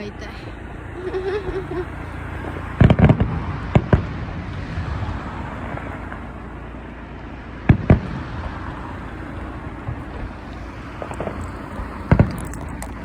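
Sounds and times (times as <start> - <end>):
low background rumble: 0.0 - 13.0
fireworks bangs: 0.5 - 7.0, 7.6 - 13.0.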